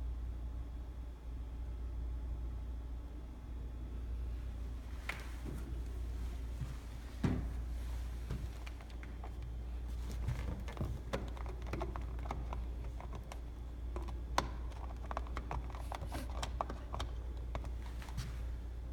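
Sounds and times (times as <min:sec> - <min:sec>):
steady low hum: 0:00.0 - 0:18.9
light clicks and taps: 0:08.3 - 0:18.3.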